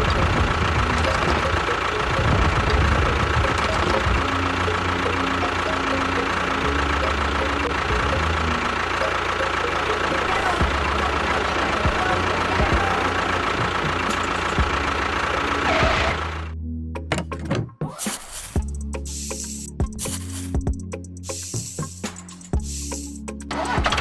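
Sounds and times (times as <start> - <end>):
small motor whining: 0.0 - 16.5.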